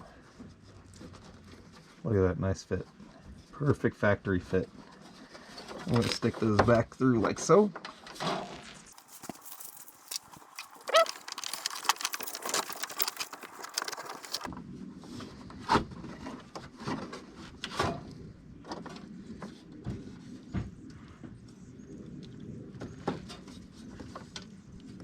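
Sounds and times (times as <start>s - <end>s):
cables and plastic connectors clicking: 9.0s - 14.5s
brief squeak: 10.6s - 14.3s.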